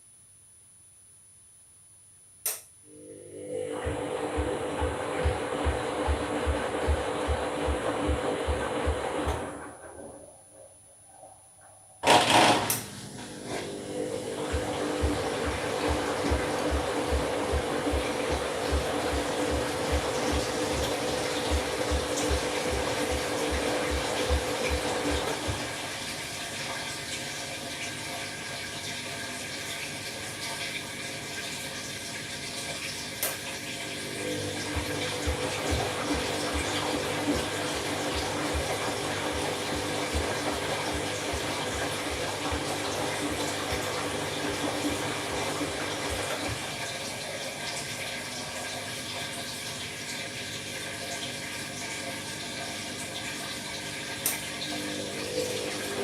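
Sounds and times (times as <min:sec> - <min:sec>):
washing machine drum motor hum: 0:02.9 - 0:10.2, 0:12.0 - 0:56.0
drum turning with low thuds: 0:03.8 - 0:09.5, 0:14.4 - 0:25.7, 0:34.6 - 0:46.7.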